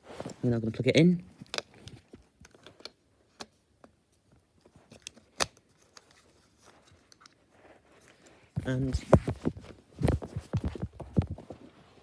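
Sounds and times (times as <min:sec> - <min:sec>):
plastic clicks and handling: 0:01.4 - 0:04.0, 0:04.9 - 0:07.4.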